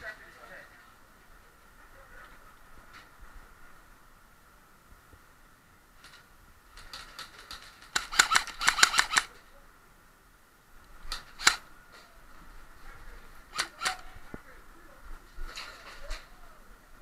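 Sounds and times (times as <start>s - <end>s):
airsoft guns firing: 7.9s - 9.3s, 11.2s - 11.6s, 13.5s - 14.0s.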